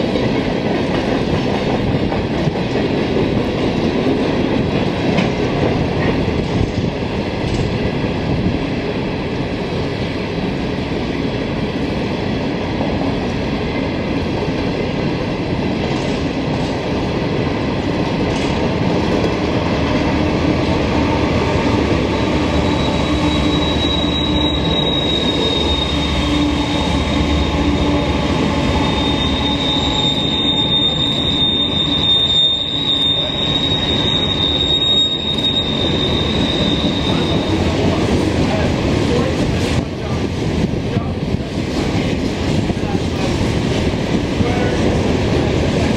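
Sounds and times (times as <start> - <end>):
train wheels rumbling on rail: 0.0 - 45.9
high wheel squeal: 22.2 - 37.8.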